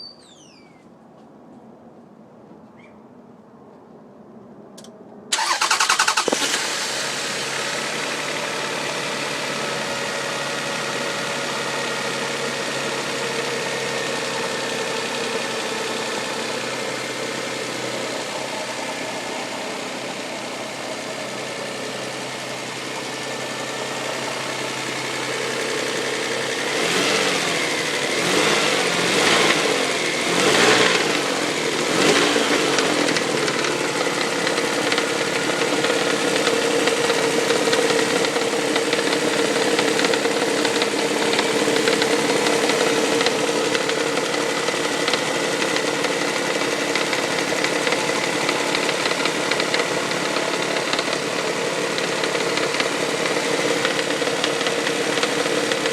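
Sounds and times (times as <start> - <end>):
car engine starting and idling: 4.8 - 55.9
engine revving: 5.4 - 14.5, 23.7 - 55.9
engine knocking: 23.7 - 55.9.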